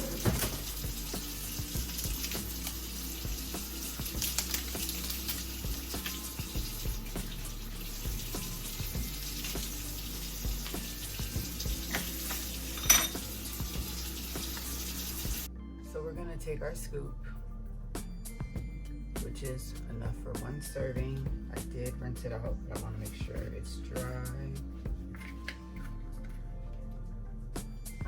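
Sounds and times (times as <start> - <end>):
tap water running into sink: 0.0 - 15.5.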